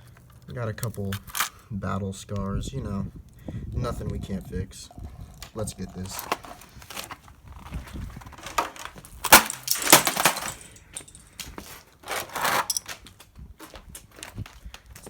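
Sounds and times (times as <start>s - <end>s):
hand tool crunching and scraping: 6.1s - 15.0s.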